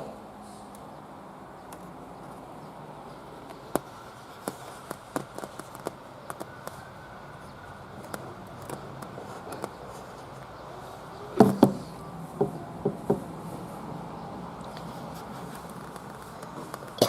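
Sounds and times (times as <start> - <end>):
sharp clicks and light taps: 3.4 - 6.9.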